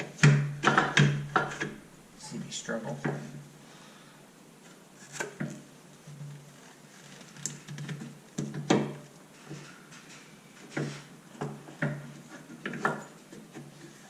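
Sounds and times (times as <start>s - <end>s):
shock absorber knocking and clunking: 0.0s - 1.8s.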